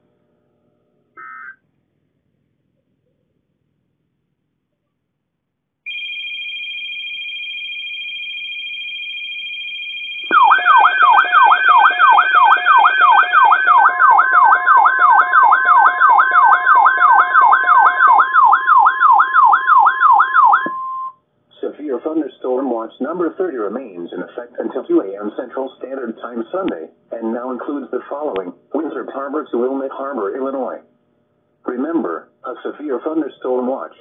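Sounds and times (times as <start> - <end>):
high two-tone alert: 1.2 - 1.6, 10.2 - 18.3
sweeping siren tone: 5.9 - 21.1.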